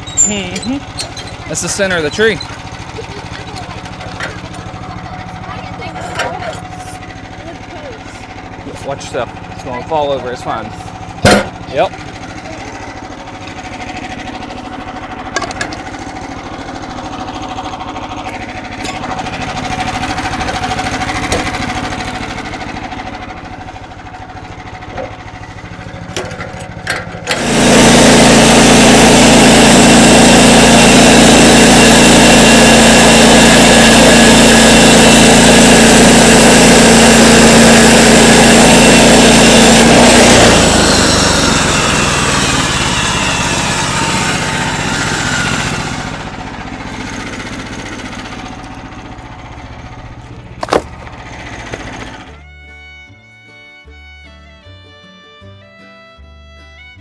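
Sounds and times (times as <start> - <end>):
saw cutting log: 0.0 - 9.0, 18.2 - 52.4
sawmill engine running: 0.0 - 55.2
sharp knocks: 11.2 - 11.6, 50.6 - 52.2.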